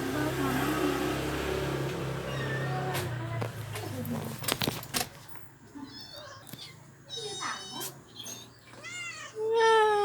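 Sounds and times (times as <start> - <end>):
faint cat meows: 2.2 - 3.0, 5.8 - 10.0.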